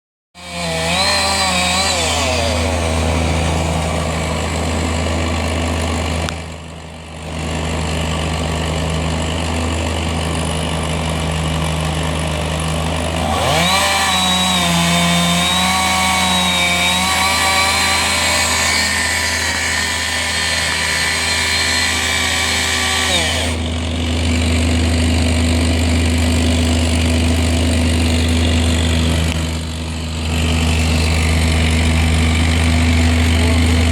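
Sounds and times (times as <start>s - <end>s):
chainsaw engine running and revving: 0.4s - 33.9s.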